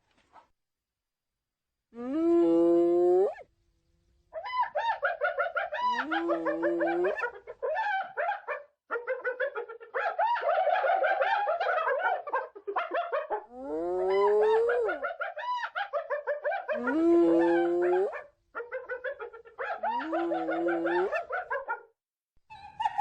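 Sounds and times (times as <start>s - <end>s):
hyenas giggling calls: 5.5s - 8.0s, 12.5s - 15.7s, 16.5s - 18.2s, 19.1s - 21.4s.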